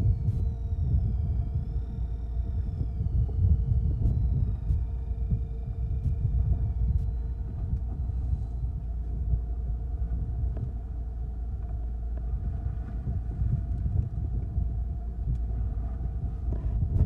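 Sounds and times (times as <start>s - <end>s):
boat engine rumbling: 0.0s - 17.0s.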